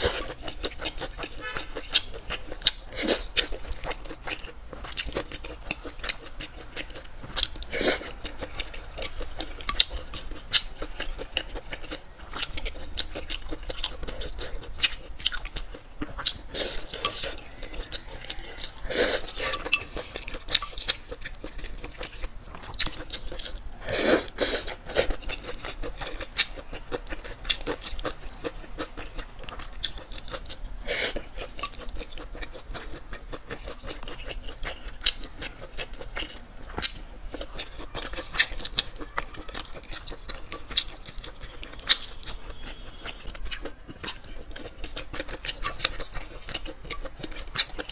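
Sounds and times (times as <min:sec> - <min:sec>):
chewing and mouth clicks: 0:00.0 - 0:47.9
utensils clinking on dishes: 0:19.2 - 0:20.8.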